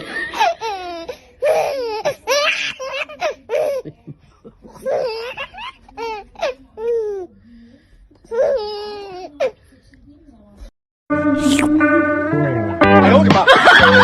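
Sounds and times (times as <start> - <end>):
baby laughing: 4.7 - 7.0.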